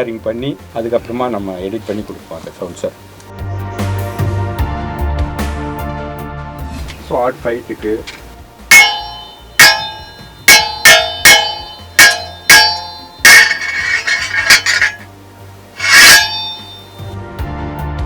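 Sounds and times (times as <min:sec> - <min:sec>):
sharp ringing hits: 0:08.7 - 0:15.1, 0:15.8 - 0:17.2.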